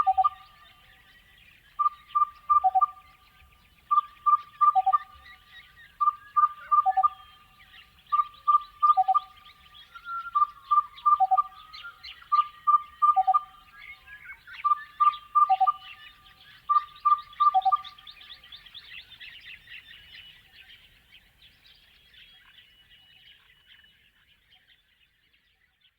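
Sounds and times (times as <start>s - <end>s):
bellbird singing ringing notes: 0.0s - 1.0s, 1.8s - 3.1s, 3.9s - 18.5s
faint higher chirping: 0.0s - 25.9s.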